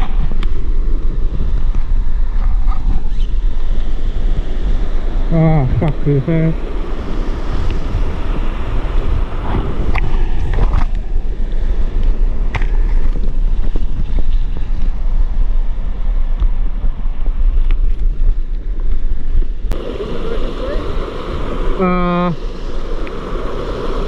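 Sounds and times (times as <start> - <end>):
wind buffeting microphone: 0.0 - 24.0
waterfall stream rushing: 19.8 - 24.0.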